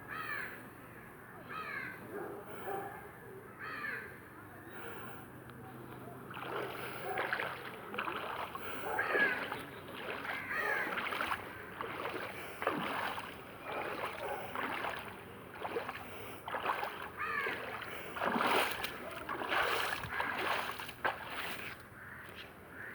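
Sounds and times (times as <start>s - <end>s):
footsteps splashing through water: 5.9s - 22.9s.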